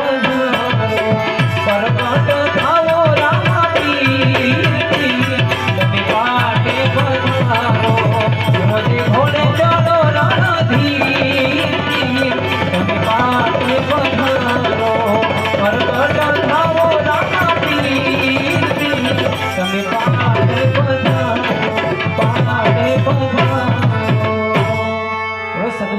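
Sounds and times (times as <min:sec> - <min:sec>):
hand drums: 0:00.0 - 0:25.1
harmonium: 0:00.0 - 0:25.9.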